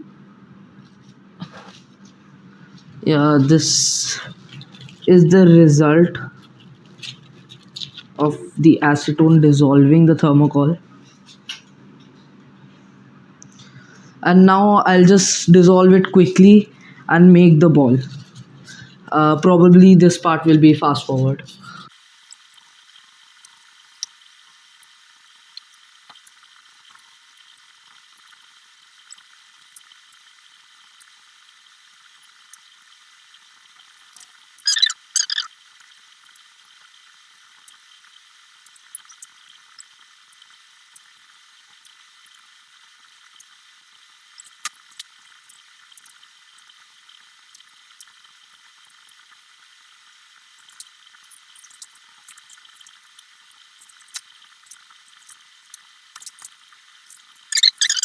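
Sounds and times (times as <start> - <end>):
styrofoam squeaks and clicks: 34.6 - 35.6, 57.5 - 58.0.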